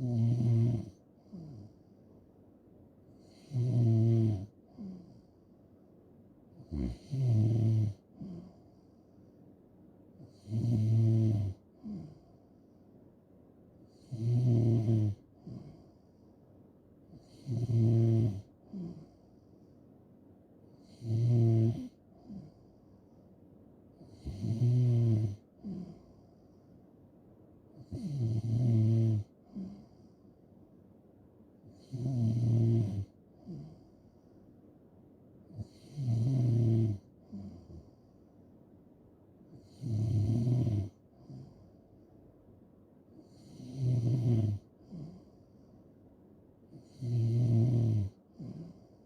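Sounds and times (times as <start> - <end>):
person snoring: 0.0 - 1.7, 3.2 - 5.2, 6.6 - 8.6, 10.2 - 12.2, 14.0 - 15.9, 17.2 - 19.1, 20.8 - 22.6, 24.0 - 26.2, 27.8 - 30.0, 31.8 - 33.8, 35.6 - 38.0, 39.6 - 41.6, 43.3 - 45.4, 46.8 - 49.0
faint breath: 8.1 - 9.7, 11.7 - 13.2, 15.2 - 17.2, 18.6 - 20.8, 21.9 - 23.4, 25.5 - 27.0, 29.4 - 30.6, 33.3 - 34.6, 37.1 - 38.5, 41.0 - 42.2, 44.6 - 46.1, 48.2 - 49.0.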